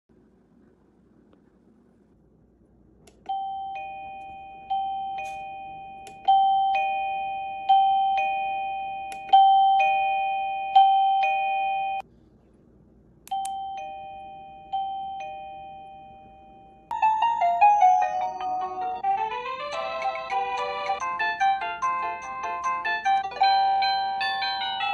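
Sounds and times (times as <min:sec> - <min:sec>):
electronic doorbell chime: 0:03.3 - 0:12.0, 0:13.4 - 0:24.9.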